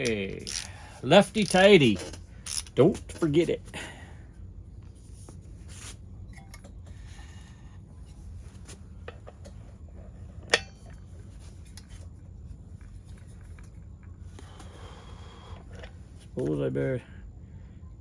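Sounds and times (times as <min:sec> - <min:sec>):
metal tools handled on workbench: 0:10.4 - 0:11.0.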